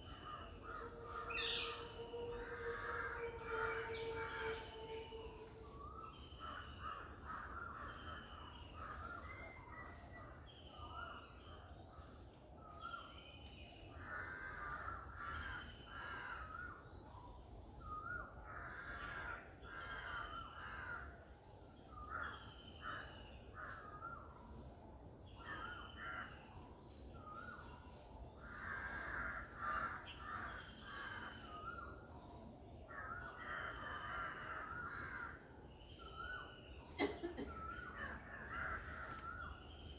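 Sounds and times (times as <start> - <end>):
birds chattering calls: 32.9 - 39.9.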